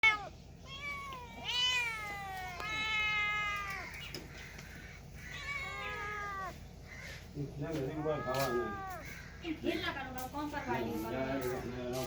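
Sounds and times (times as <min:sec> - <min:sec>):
cat meowing: 0:00.0 - 0:04.4, 0:05.0 - 0:09.2.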